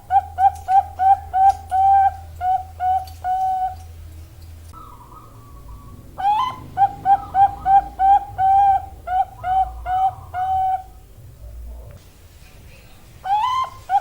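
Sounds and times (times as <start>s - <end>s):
dove cooing: 0.0s - 4.0s, 4.8s - 11.8s, 13.2s - 14.0s.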